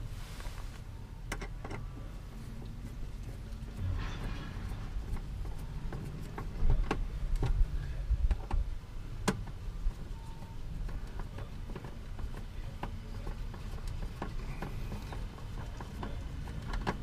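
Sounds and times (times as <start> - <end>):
low rumble: 2.0 - 9.1
parts clicking and tapping: 8.2 - 17.0.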